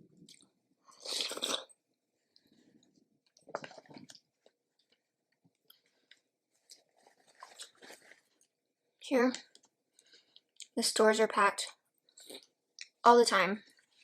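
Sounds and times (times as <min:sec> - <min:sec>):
person chewing: 0:00.2 - 0:08.6, 0:12.1 - 0:13.0.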